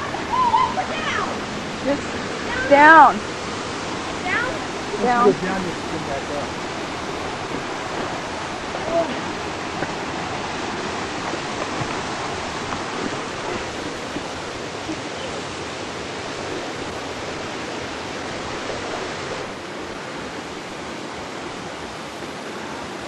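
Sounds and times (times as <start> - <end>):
waterfall rushing: 0.0 - 23.0.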